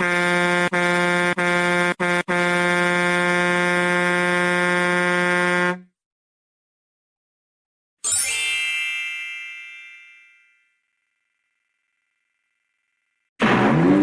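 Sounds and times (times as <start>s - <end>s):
horn honking: 0.0s - 5.9s.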